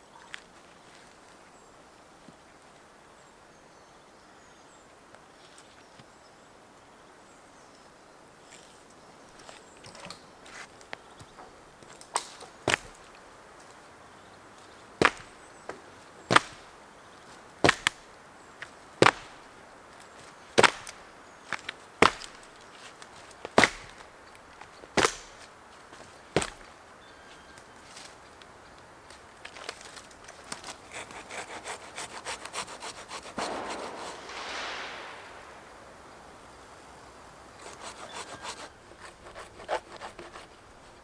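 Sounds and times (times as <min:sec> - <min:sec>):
wood chopping: 0:15.0 - 0:15.3, 0:16.3 - 0:16.6, 0:17.6 - 0:18.0, 0:19.0 - 0:19.3, 0:20.6 - 0:21.0, 0:22.0 - 0:22.4, 0:23.5 - 0:24.0, 0:25.0 - 0:25.5, 0:26.4 - 0:26.7, 0:30.5 - 0:35.5.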